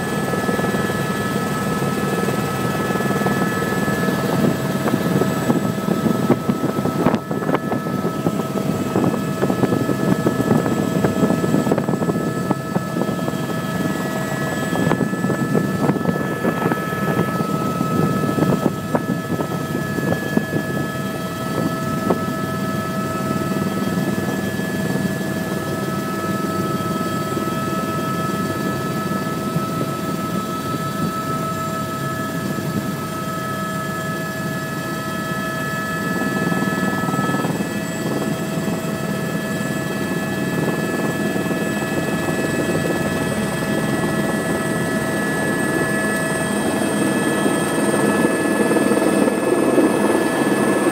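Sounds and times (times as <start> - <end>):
helicopter rotor rumble: 0.0 - 50.9.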